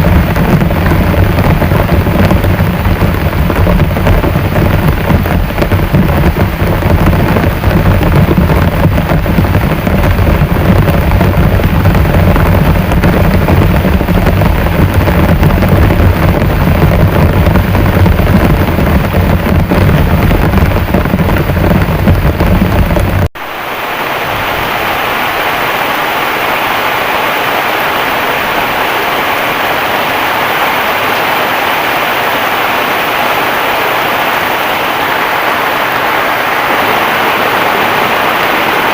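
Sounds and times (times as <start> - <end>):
deep rumble: 0.0 - 24.6
heavy rain pouring: 0.0 - 38.9.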